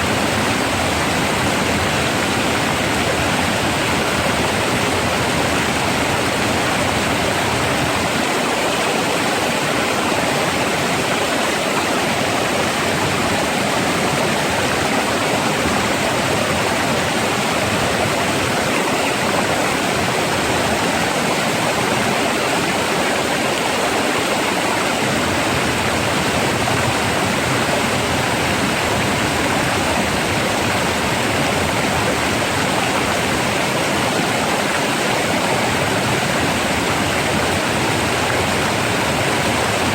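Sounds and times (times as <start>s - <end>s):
rushing flowing water: 0.0s - 39.9s.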